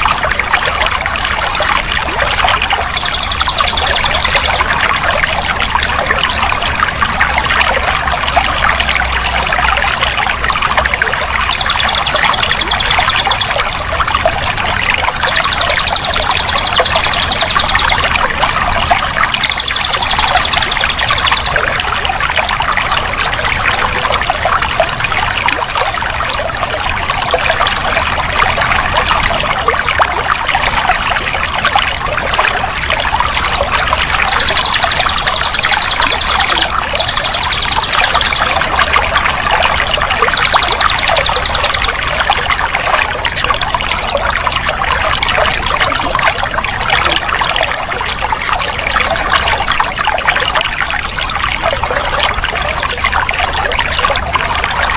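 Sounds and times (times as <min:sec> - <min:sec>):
water pouring and trickling: 0:00.0 - 0:54.9
high fast trill: 0:02.8 - 0:05.0, 0:11.5 - 0:13.7, 0:15.2 - 0:18.2, 0:19.3 - 0:21.6, 0:34.2 - 0:39.1, 0:40.2 - 0:42.1.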